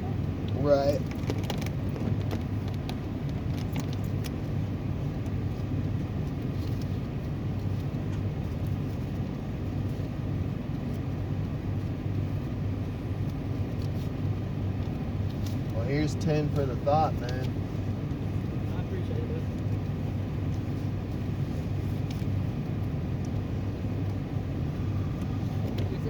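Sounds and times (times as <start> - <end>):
engine idling: 0.0 - 26.0
light clicks and rattles: 0.5 - 4.4.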